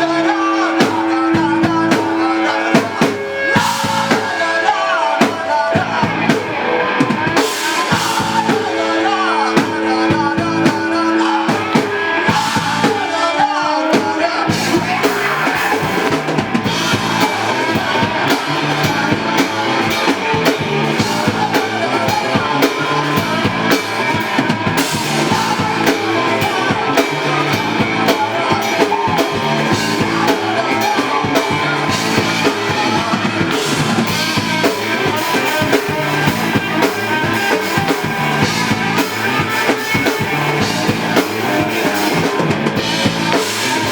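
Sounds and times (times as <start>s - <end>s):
live rock band playing: 0.0s - 43.9s
bass drum and snare: 14.0s - 43.9s.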